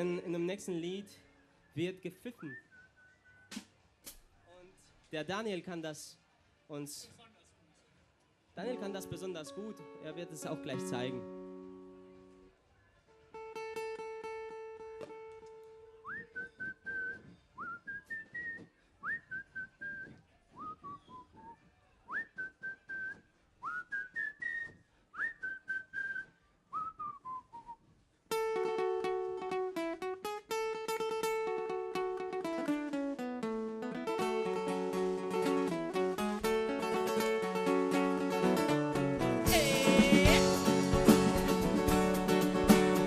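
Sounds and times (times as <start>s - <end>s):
man whistling a melody: 2.4s - 3.5s, 16.0s - 27.9s
acoustic guitar: 8.6s - 12.4s, 13.3s - 17.8s, 28.3s - 43.0s.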